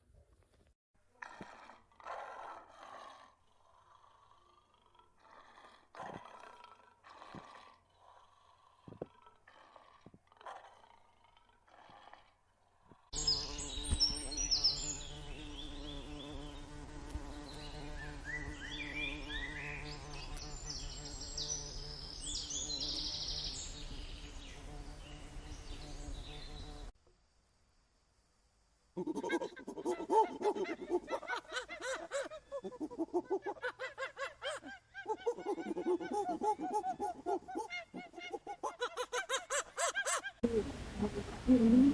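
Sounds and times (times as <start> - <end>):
small birds chirping: 13.1 - 26.9, 40.0 - 41.9.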